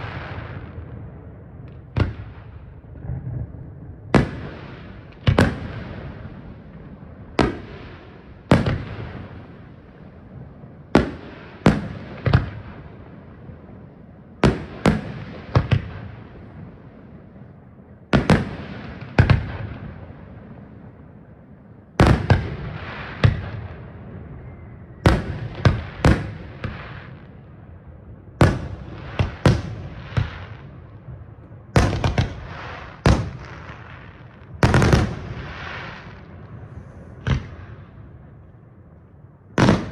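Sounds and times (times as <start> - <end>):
firework crackling: 0.0 - 0.9, 31.8 - 38.0, 39.6 - 39.9.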